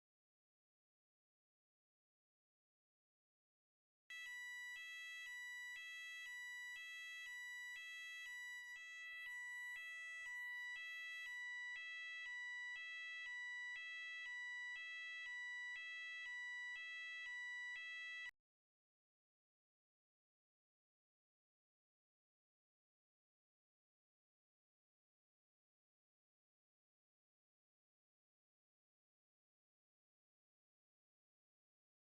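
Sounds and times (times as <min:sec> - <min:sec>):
electronic fire alarm warbling: 0:04.1 - 0:18.3.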